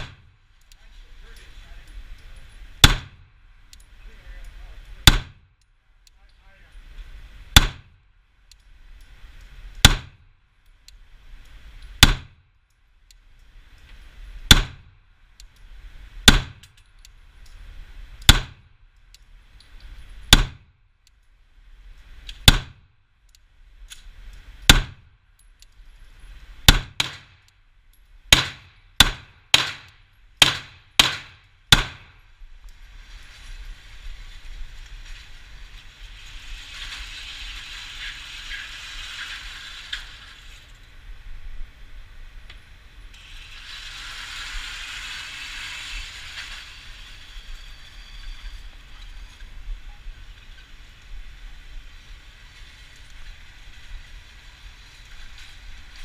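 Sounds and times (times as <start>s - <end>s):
pistol shots: 2.8s - 3.2s, 5.0s - 5.4s, 26.7s - 27.3s, 28.3s - 32.2s.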